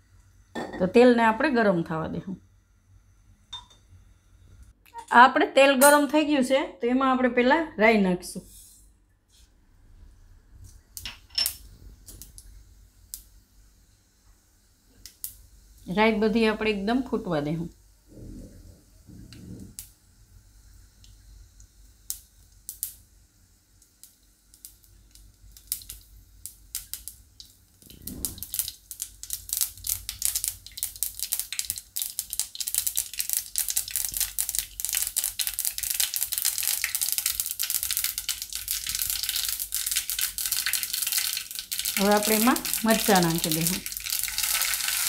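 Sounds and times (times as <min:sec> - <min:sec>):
seeds popping in hot oil: 0:14.9 - 0:16.0, 0:20.8 - 0:45.0.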